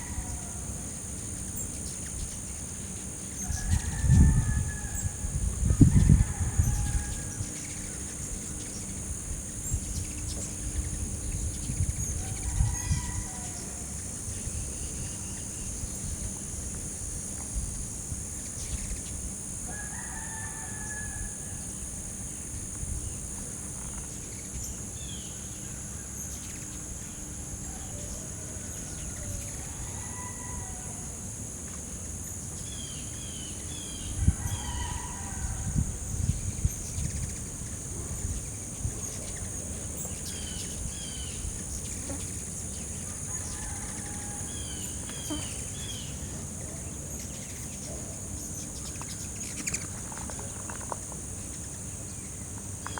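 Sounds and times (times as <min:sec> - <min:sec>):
rooster crowing: 0:00.0 - 0:00.8, 0:03.4 - 0:07.7, 0:12.2 - 0:14.0, 0:19.7 - 0:21.8, 0:27.6 - 0:31.3, 0:34.1 - 0:36.1, 0:43.1 - 0:45.7
insects droning: 0:00.0 - 0:52.9.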